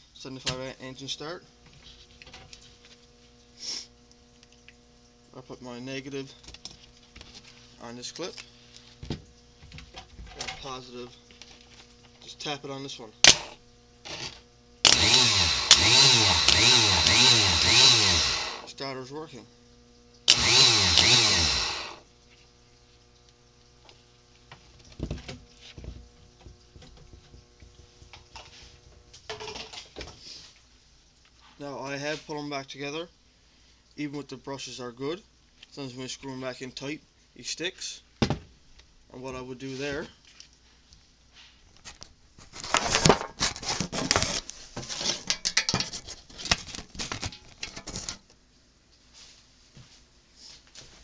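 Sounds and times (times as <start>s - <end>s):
faint steady hum: 0.0s - 51.0s
tools knocking and clattering: 44.9s - 46.1s.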